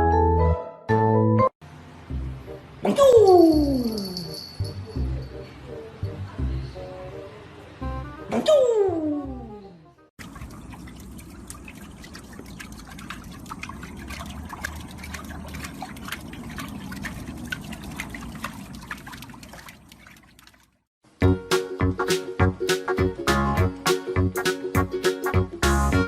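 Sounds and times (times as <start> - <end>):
small drips: 10.2 - 20.9
water trickling: 10.2 - 20.9.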